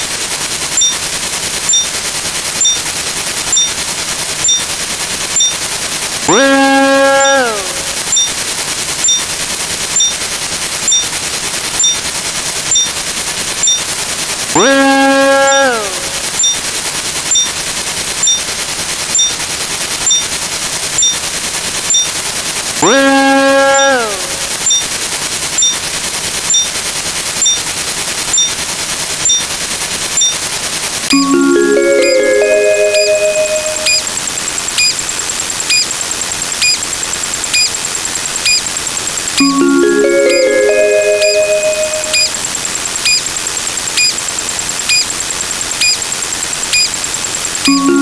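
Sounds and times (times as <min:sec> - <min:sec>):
short high beep: 0:00.8 - 0:01.0, 0:01.7 - 0:01.9, 0:02.6 - 0:02.8, 0:03.5 - 0:03.8, 0:04.4 - 0:04.7, 0:05.4 - 0:05.6, 0:06.3 - 0:08.4, 0:09.0 - 0:09.2, 0:10.0 - 0:10.2, 0:10.9 - 0:11.1, 0:11.8 - 0:12.0, 0:12.7 - 0:12.9, 0:13.6 - 0:13.9, 0:14.6 - 0:16.6, 0:17.3 - 0:17.5, 0:18.2 - 0:18.4, 0:19.2 - 0:19.4, 0:20.0 - 0:20.2, 0:21.0 - 0:21.2, 0:22.8 - 0:24.9, 0:26.5 - 0:26.7, 0:28.3 - 0:28.5, 0:29.2 - 0:29.4, 0:30.2 - 0:30.4, 0:31.1 - 0:35.0, 0:39.4 - 0:43.3, 0:43.9 - 0:44.2, 0:45.8 - 0:46.0, 0:47.5 - 0:48.0.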